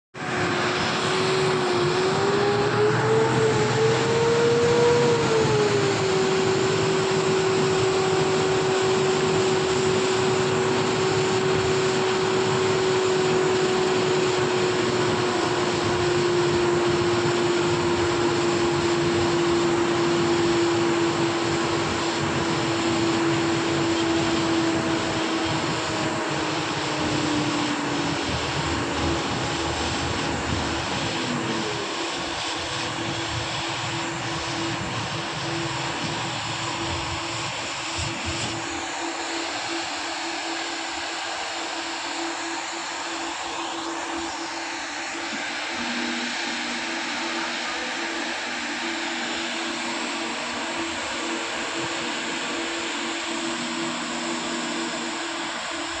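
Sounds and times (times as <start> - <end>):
electric motor whine: 0.2 - 56.0
rush of air: 21.1 - 41.5.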